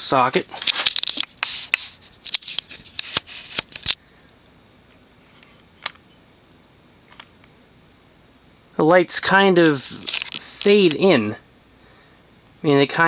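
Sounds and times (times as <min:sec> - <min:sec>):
rustling handling noise: 0:00.4 - 0:04.0, 0:09.6 - 0:11.1.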